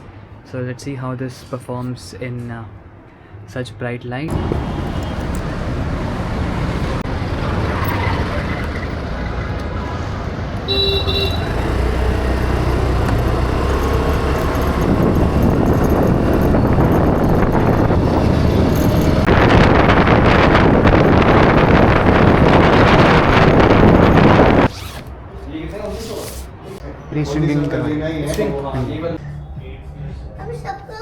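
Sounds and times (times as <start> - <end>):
road traffic noise: 4.3 - 30.4
vehicle horn toot: 10.7 - 12.6.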